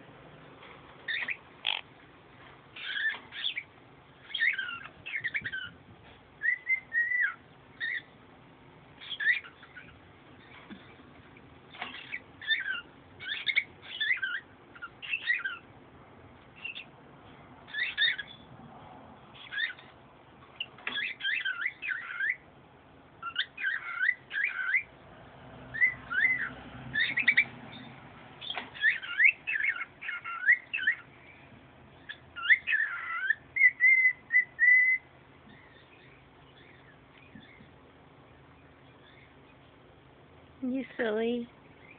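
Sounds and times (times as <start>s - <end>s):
bird singing whistled phrases: 6.4s - 8.0s, 32.1s - 35.1s.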